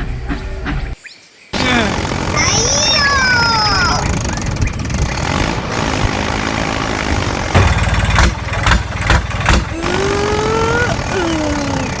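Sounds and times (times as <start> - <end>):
loud knocks: 7.5 - 9.7
rising and falling pitched tone: 9.7 - 12.0.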